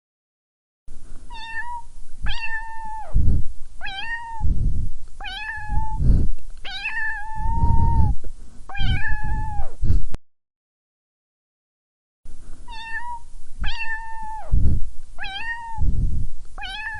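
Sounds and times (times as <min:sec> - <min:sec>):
low rumbling noise: 0:00.9 - 0:10.2, 0:12.3 - 0:16.9
cat meowing: 0:01.3 - 0:03.2, 0:03.8 - 0:04.5, 0:05.2 - 0:06.0, 0:06.6 - 0:09.8, 0:12.7 - 0:14.5, 0:15.2 - 0:15.8, 0:16.6 - 0:16.9.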